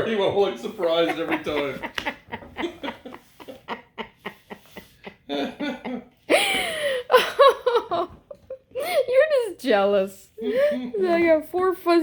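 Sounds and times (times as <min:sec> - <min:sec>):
people laughing: 0:00.6 - 0:08.7
loud rasping laugh: 0:01.0 - 0:08.1.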